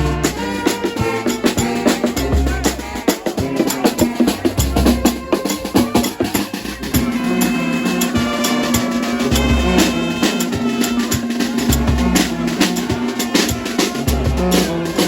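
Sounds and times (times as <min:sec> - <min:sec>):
deep bass notes: 0:00.0 - 0:00.5, 0:02.2 - 0:03.6, 0:09.3 - 0:10.3, 0:11.7 - 0:12.6, 0:14.0 - 0:15.0
music with drum-kit beat: 0:00.0 - 0:15.0.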